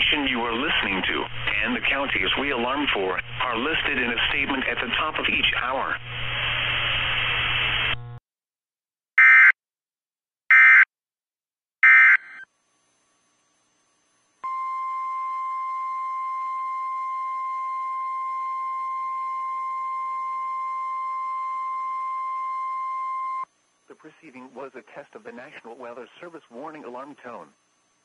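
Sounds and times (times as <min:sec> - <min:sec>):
radio static: 0:00.0 - 0:08.1, 0:23.9 - 0:27.6.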